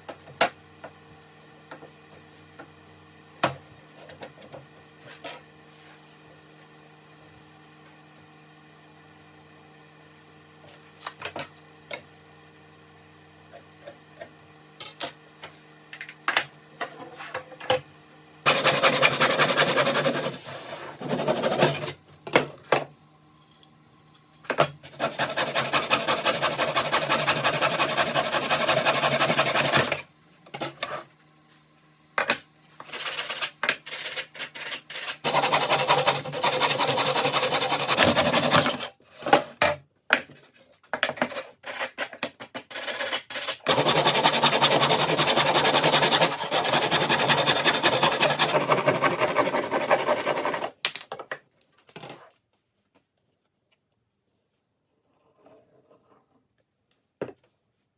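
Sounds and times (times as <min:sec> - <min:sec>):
rasping wood by hand: 0:18.5 - 0:21.9, 0:24.9 - 0:30.0, 0:34.6 - 0:38.9, 0:42.7 - 0:50.7.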